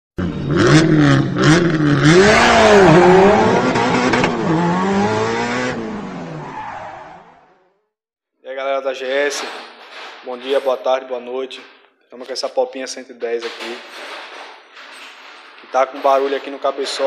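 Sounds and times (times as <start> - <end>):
vehicle engine revving: 0.2 - 6.5
tyre screech: 6.4 - 7.4.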